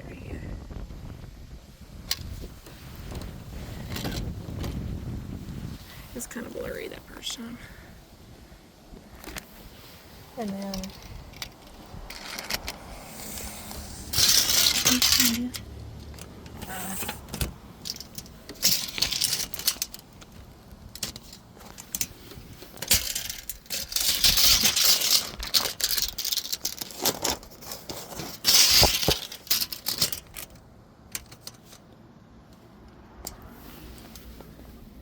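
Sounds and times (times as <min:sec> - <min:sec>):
tape measure rattling and scraping: 0:10.4 - 0:31.9.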